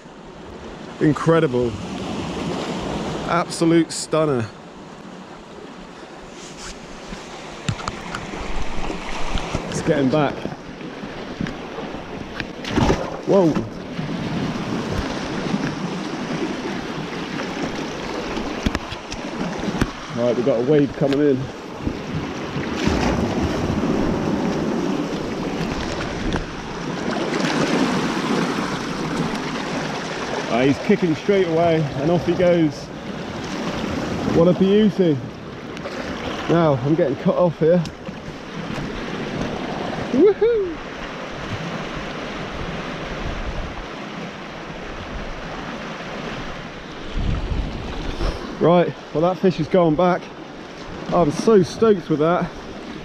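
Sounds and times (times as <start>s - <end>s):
sea wave washing ashore: 0.0s - 53.0s
wind buffeting microphone: 37.9s - 43.9s, 44.8s - 48.6s.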